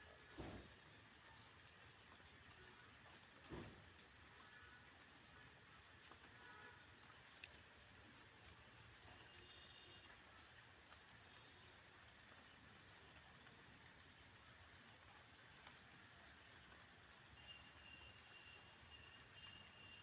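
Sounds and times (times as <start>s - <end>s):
faint outdoor hiss: 0.0s - 20.0s
faint ticks: 6.0s - 7.7s, 14.7s - 16.9s.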